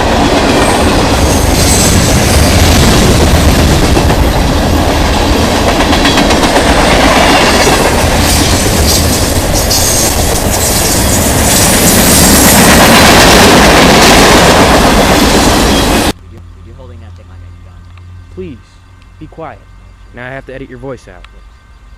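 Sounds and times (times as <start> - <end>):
train wheels clattering over rails: 0.0 - 16.1
high-pitched wheel squeal: 1.2 - 2.7.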